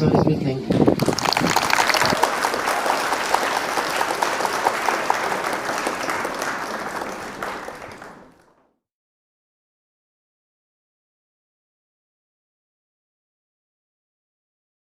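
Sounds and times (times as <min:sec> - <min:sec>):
audience applauding: 0:00.7 - 0:08.7.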